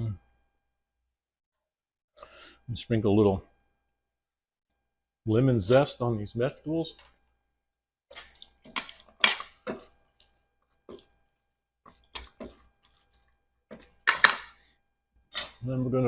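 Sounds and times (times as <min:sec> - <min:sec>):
kitchen utensils and dishes clinking: 0:08.1 - 0:10.0, 0:12.2 - 0:14.6, 0:15.3 - 0:15.7.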